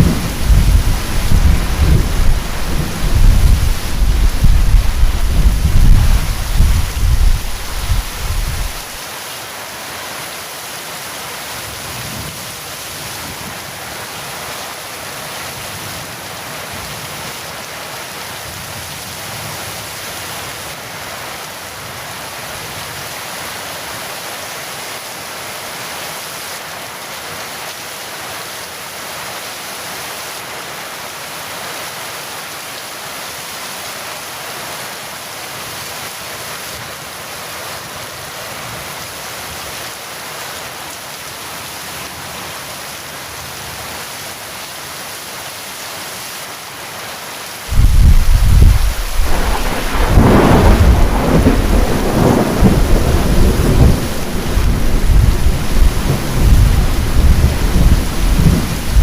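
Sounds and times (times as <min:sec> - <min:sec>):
low thunder rumble: 0:00.0 - 0:09.0, 0:47.7 - 0:59.0
heavy rain falling: 0:00.0 - 0:59.0.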